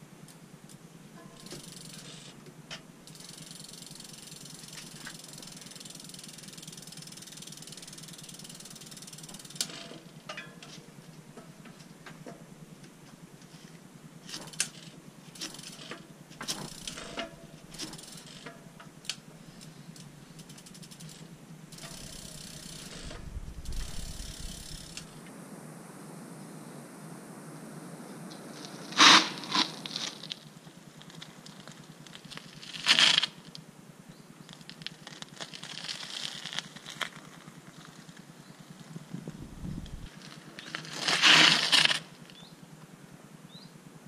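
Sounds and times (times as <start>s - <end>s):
bicycle parts knocking: 0.6s - 13.5s, 14.2s - 25.1s
ratchet clicking: 1.4s - 10.8s, 14.3s - 25.1s
low rumble: 21.8s - 25.9s, 39.0s - 40.1s.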